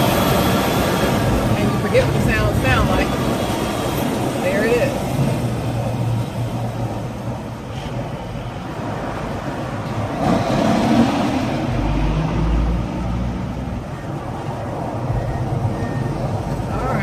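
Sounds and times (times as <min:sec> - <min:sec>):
freeway traffic: 0:00.0 - 0:17.0
truck engine and tyres humming: 0:00.0 - 0:17.0
vehicle passing close by: 0:08.9 - 0:14.0.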